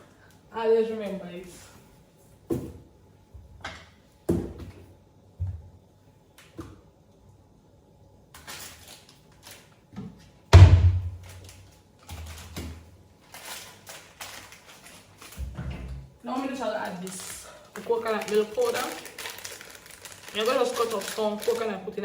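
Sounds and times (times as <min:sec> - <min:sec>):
loud thump: 0:10.5 - 0:11.1
rustling: 0:16.7 - 0:21.8.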